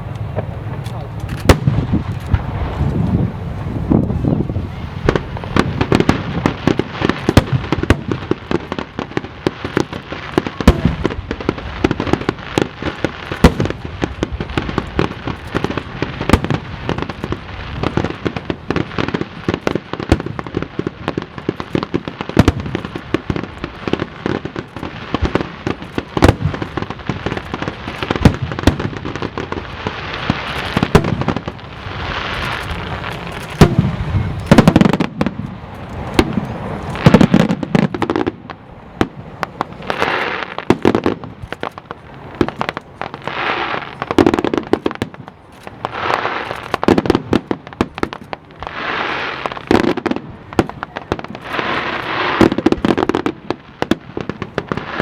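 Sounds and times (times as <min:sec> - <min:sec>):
fireworks bursts and crackling: 0:00.0 - 0:55.0.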